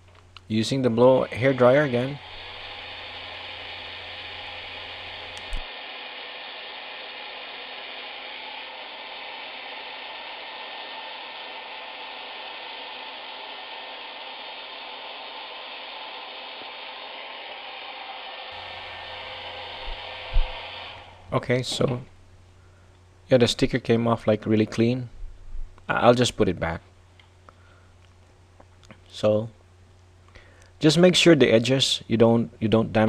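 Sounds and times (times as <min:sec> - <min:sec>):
hair dryer blowing: 0:00.8 - 0:21.4.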